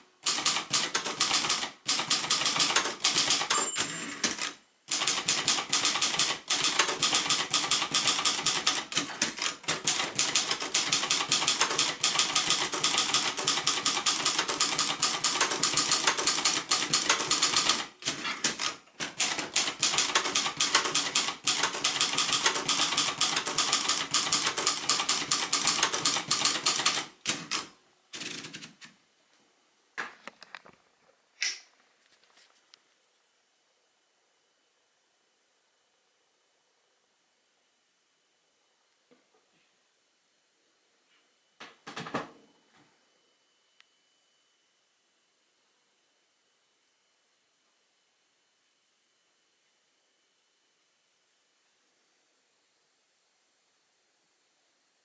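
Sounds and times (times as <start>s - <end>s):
typewriter typing: 0.2s - 28.9s.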